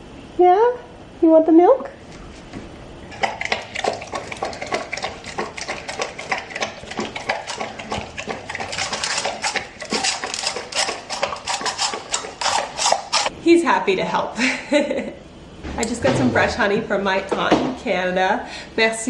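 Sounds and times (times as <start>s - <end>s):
pet lapping milk: 3.1s - 13.3s.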